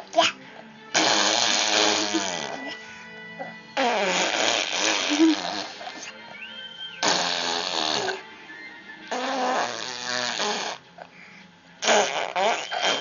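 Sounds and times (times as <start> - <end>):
person making mouth noises: 1.0 - 2.8, 3.8 - 6.1, 7.0 - 8.2, 9.1 - 10.8, 11.8 - 13.0.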